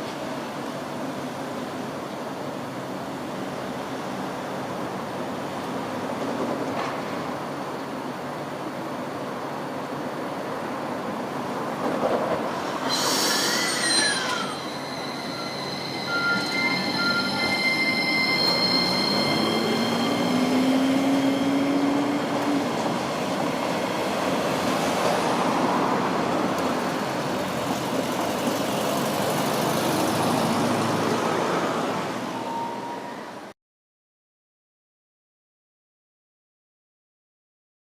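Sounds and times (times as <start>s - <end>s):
traffic: 0.0s - 33.6s
wheels squealing on rails: 12.3s - 33.5s.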